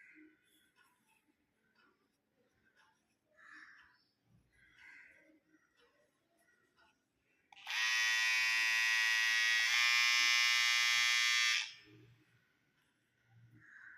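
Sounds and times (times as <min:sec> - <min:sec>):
hair trimmer buzzing: 0:07.6 - 0:11.8.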